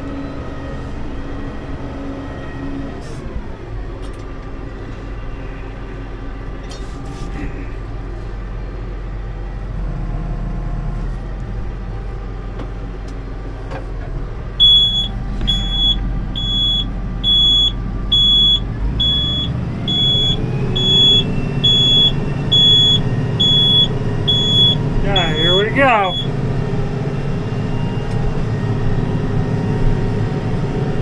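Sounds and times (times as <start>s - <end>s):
tractor engine running: 0.0s - 31.0s
electronic warning beeps: 14.6s - 26.4s.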